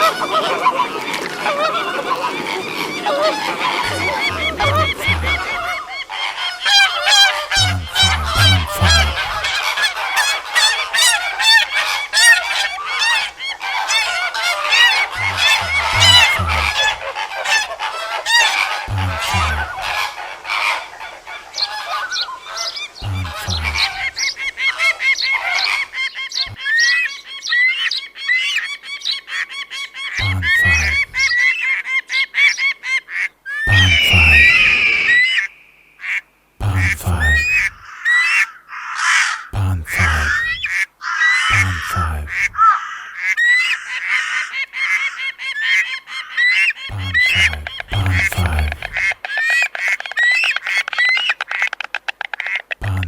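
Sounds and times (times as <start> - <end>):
cartoon geese honking: 0.0 - 26.6, 30.1 - 31.8, 33.1 - 51.7.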